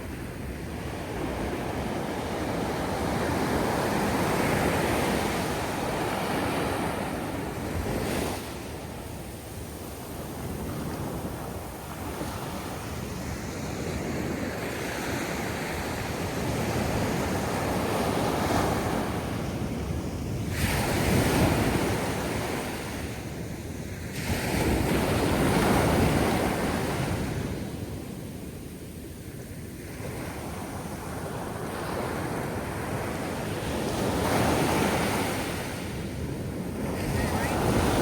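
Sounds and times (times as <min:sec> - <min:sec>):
wind buffeting microphone: 0:32.8 - 0:38.0
waves breaking: 0:33.9 - 0:38.0.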